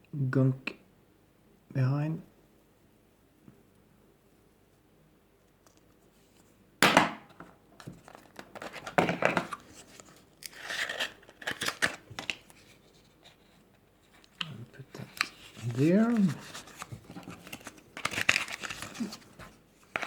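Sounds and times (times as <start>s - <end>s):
sticker crinkling and tearing: 8.2s - 20.0s.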